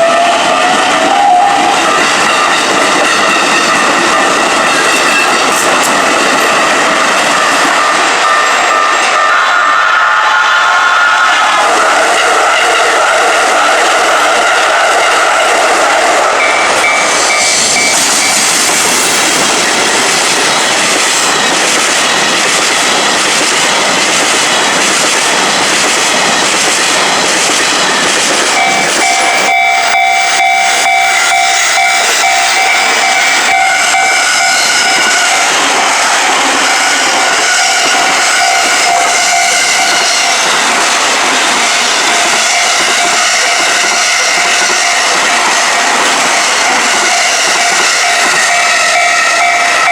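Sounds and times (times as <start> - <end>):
wheels rushing on rails: 0.0 - 49.9
steady high tone: 15.0 - 21.4, 28.5 - 40.6, 41.7 - 49.9.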